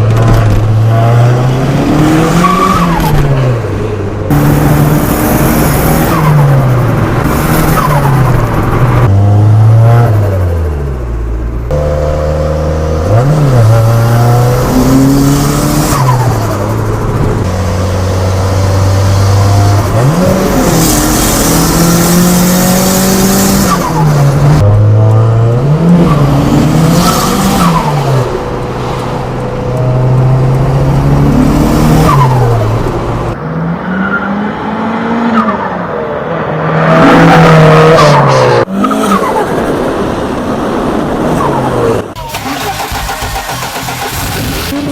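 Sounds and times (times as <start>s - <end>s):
car engine accelerating hard: 11.7s - 44.9s.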